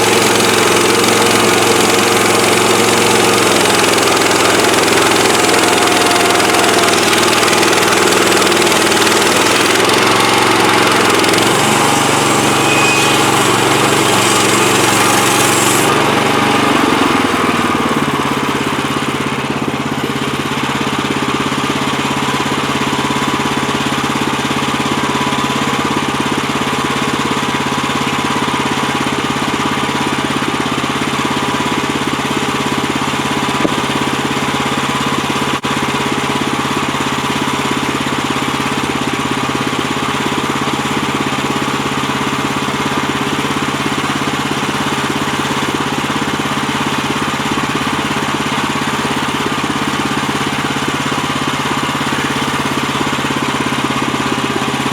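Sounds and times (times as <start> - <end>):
band blade drive whine: 0.0 - 20.1
gas engine running: 0.0 - 54.9.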